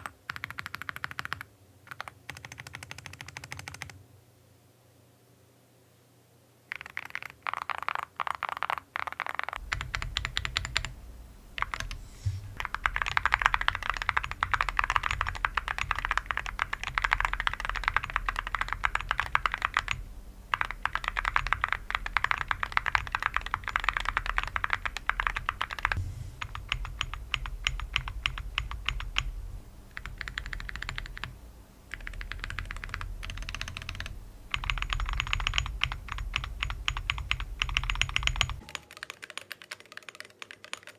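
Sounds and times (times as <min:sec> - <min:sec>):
fast mechanical keyboard typing: 0:00.0 - 0:04.0, 0:06.7 - 0:10.9, 0:11.6 - 0:12.0, 0:12.6 - 0:31.3, 0:31.9 - 0:40.9
steady low hum: 0:09.6 - 0:38.7.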